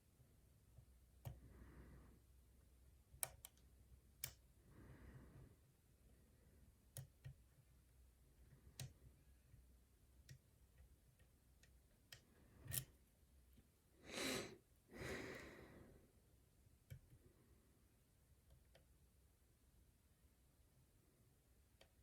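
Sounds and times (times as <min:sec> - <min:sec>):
short breaths: 0:14.0 - 0:16.1.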